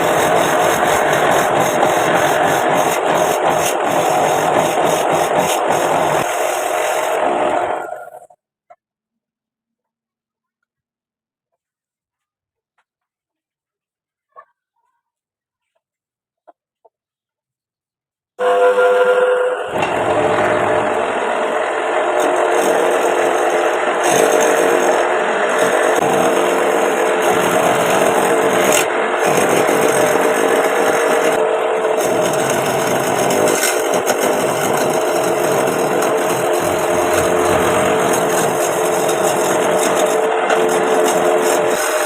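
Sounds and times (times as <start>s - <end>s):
lathe motor hum: 0.0s - 8.3s, 18.4s - 42.0s
tool scraping spinning wood: 0.0s - 8.4s, 18.4s - 42.0s.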